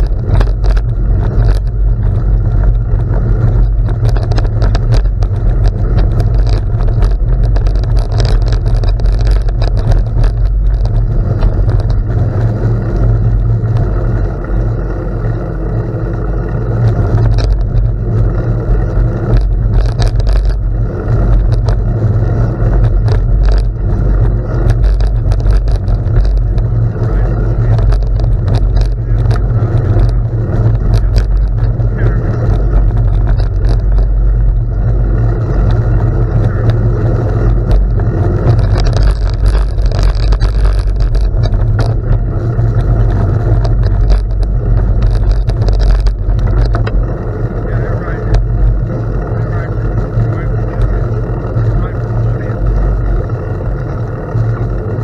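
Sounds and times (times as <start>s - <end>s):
rattling clicks: 0.0s - 14.2s, 16.5s - 55.0s
tyres crunching on gravel: 0.0s - 14.8s, 16.6s - 55.0s
wind buffeting microphone: 0.0s - 55.0s.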